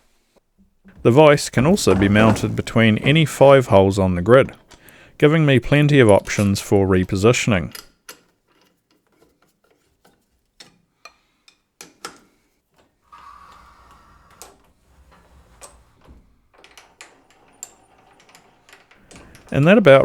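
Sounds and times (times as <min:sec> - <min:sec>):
hardware clicking and knocking: 0:00.9 - 0:09.3, 0:16.0 - 0:20.0.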